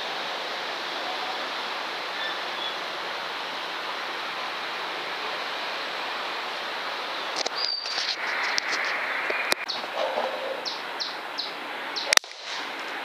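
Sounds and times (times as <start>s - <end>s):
steady hiss: 0.0s - 13.0s
sharp clicks: 12.0s - 12.6s.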